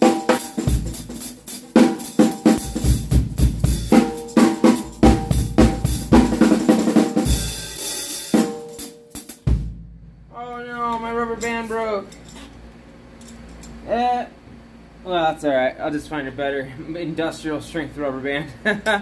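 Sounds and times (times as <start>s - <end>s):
cymbal wash: 0.0s - 9.5s
drum kit played hard: 0.0s - 10.4s
tambourine jangling: 3.6s - 9.4s, 11.4s - 13.8s.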